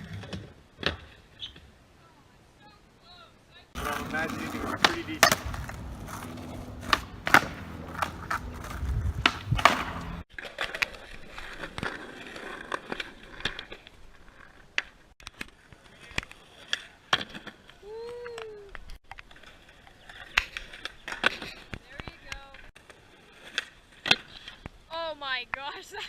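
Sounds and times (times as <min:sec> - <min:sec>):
skateboard clacks and knocks: 0:03.8 - 0:10.9
skateboard wheels rolling on pavement: 0:03.8 - 0:18.0, 0:18.8 - 0:24.8.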